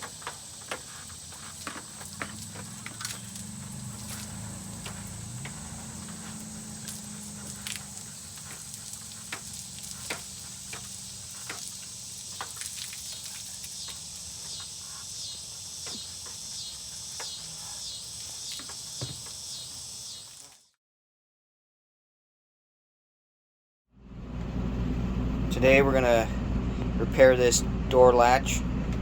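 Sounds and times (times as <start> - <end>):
insects chirring: 0.0 - 20.7.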